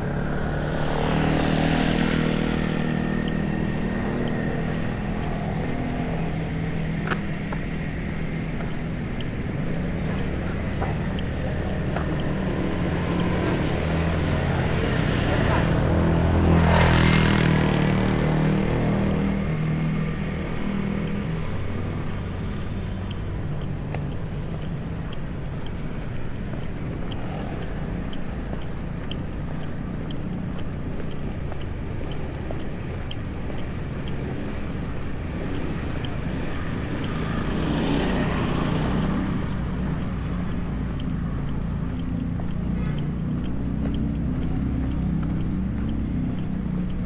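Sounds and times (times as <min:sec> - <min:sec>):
vehicle passing close by: 0:00.0 - 0:06.9, 0:09.8 - 0:22.4, 0:33.5 - 0:47.0
street traffic rumble: 0:00.0 - 0:47.0.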